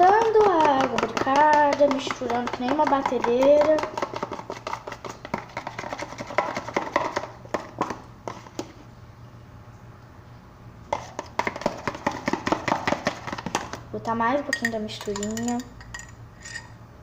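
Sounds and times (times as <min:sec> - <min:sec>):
spoon tapping against bowl: 0:14.5 - 0:16.1.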